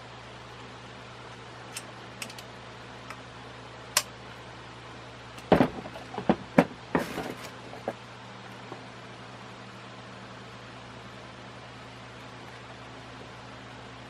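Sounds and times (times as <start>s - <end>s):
steady low hum: 0.0s - 14.0s
hard objects knocking and clattering: 5.4s - 8.0s.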